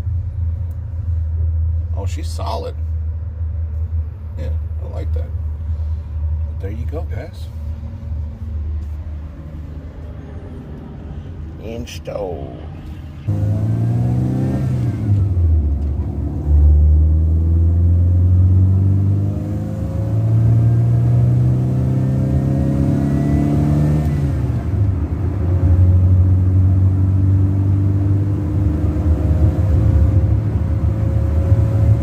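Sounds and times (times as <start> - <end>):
car engine accelerating through gears: 12.8 - 32.0.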